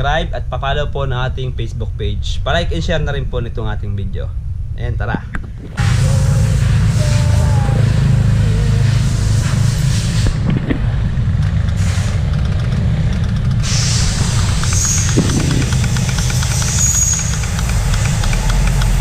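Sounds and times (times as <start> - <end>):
motorcycle engine idling: 5.2 - 19.0
light regular ticking: 14.2 - 19.0.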